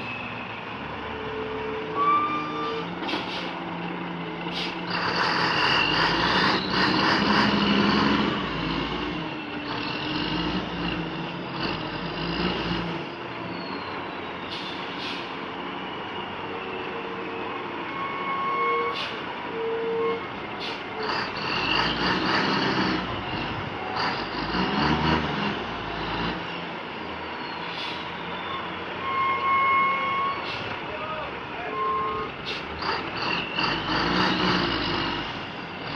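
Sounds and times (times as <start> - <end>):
truck engine under load: 0.0 - 35.9.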